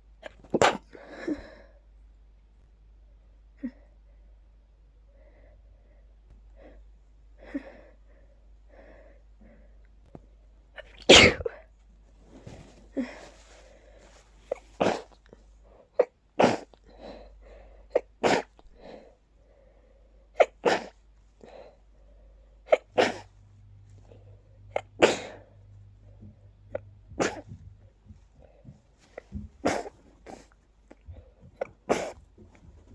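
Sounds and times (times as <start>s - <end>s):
person sneezing: 0.2s - 0.9s, 10.8s - 11.6s, 14.5s - 15.2s, 16.0s - 16.8s, 18.0s - 18.6s, 20.4s - 21.0s, 22.7s - 23.3s, 24.7s - 25.5s, 26.7s - 27.6s, 29.2s - 30.5s, 31.9s - 32.2s.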